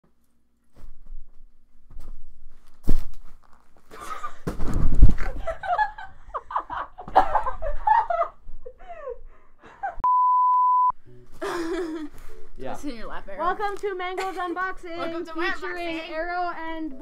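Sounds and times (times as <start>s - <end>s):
electronic beep: 10.0s - 10.9s.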